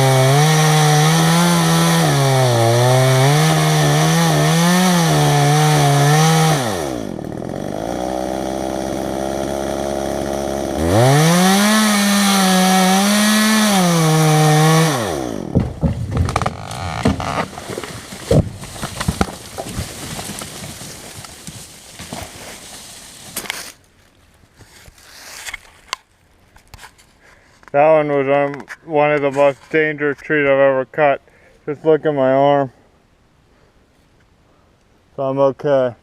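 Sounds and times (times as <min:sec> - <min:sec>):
chainsaw idling: 0:00.0 - 0:19.4
chainsaw cutting: 0:00.0 - 0:23.8
sharp cracks and knocks: 0:15.4 - 0:23.8.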